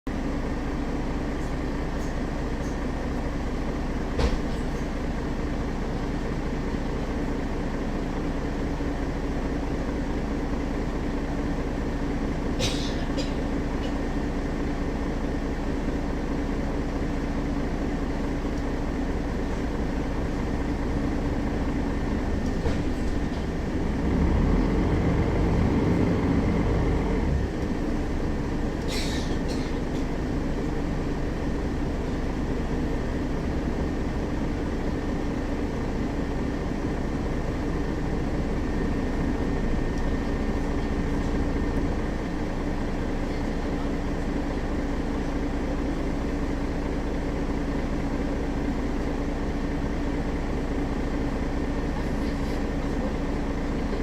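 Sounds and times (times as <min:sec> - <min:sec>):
bus diesel engine droning: 0:00.1 - 0:54.0
bus body rattles: 0:01.3 - 0:05.0, 0:21.7 - 0:23.9, 0:24.9 - 0:33.8.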